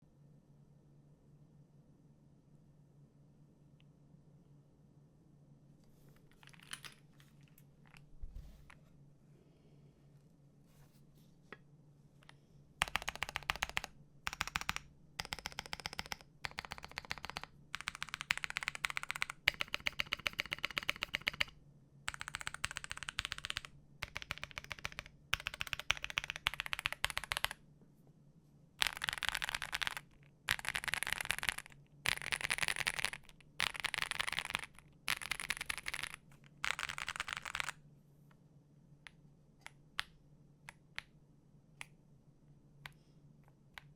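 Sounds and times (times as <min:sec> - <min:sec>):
mechanical keyboard keys clacking: 0:12.8 - 0:21.5, 0:22.1 - 0:27.6, 0:28.8 - 0:37.7.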